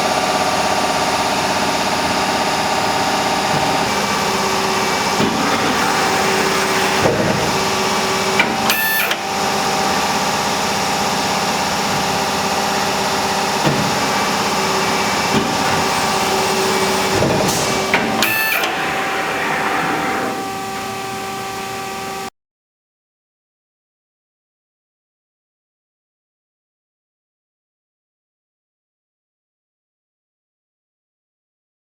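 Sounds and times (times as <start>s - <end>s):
machine clanks: 0.0s - 21.0s
folding machine hum and whine: 0.0s - 22.3s.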